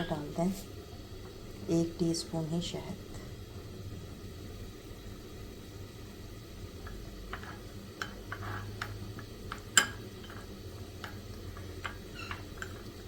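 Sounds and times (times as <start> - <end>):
spoon clinking in a cup: 9.7 - 11.2, 11.8 - 12.9.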